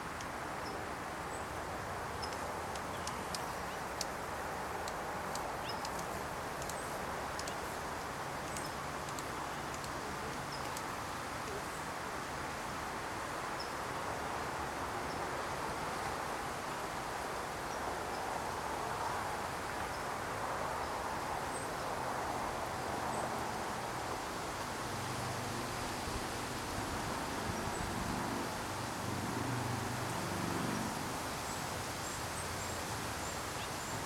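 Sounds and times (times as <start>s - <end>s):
outdoor background noise: 0.0s - 34.0s.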